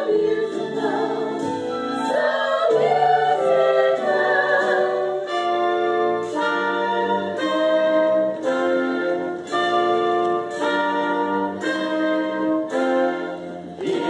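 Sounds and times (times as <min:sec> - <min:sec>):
brass-led orchestral music: 0:00.0 - 0:14.0.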